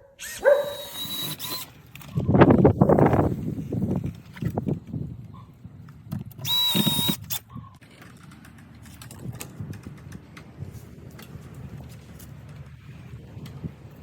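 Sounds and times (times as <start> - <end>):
cordless drill whining: 0.2 - 3.5, 6.3 - 7.6.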